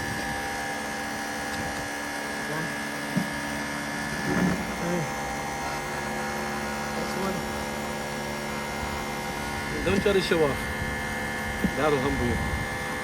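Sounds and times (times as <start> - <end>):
pressure washer motor hum: 0.0 - 13.0.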